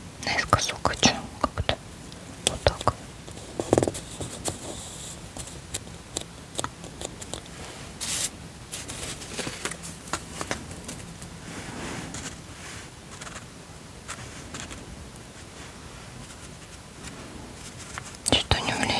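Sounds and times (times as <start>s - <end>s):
paper rustle: 6.8s - 18.2s.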